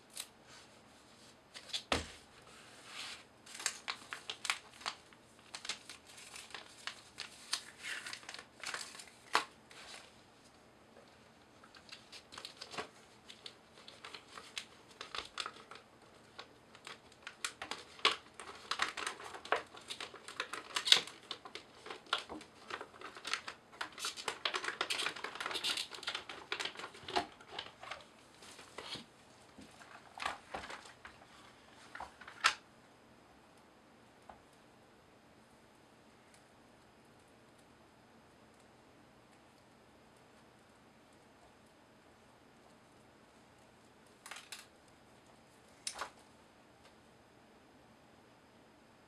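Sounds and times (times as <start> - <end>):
plastic wrapping crinkling: 3.4 - 10.2, 11.6 - 32.6.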